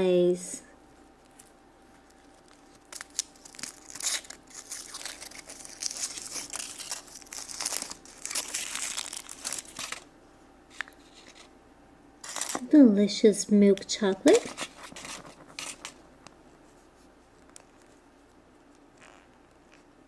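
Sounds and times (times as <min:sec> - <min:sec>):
foil wrapper crinkling: 0:01.2 - 0:10.1, 0:12.2 - 0:12.7, 0:14.2 - 0:16.2.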